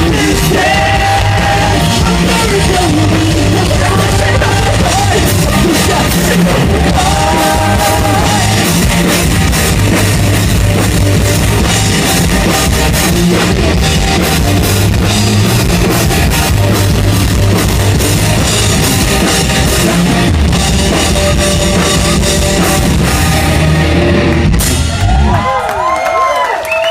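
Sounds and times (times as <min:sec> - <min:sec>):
person singing: 0:00.0 - 0:09.2
drum kit: 0:00.0 - 0:25.9
electric guitars: 0:00.0 - 0:26.4
bass guitar: 0:00.0 - 0:26.9.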